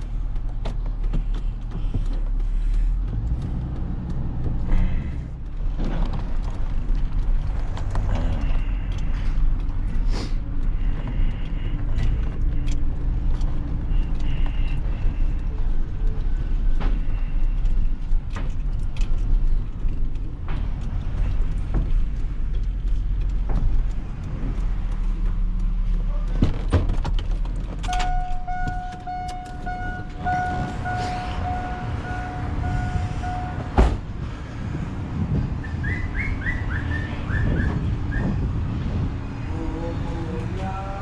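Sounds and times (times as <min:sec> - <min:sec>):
clicks and squeaks from truck: 0:00.0 - 0:34.4, 0:35.3 - 0:38.5
truck engine idling: 0:27.4 - 0:38.7.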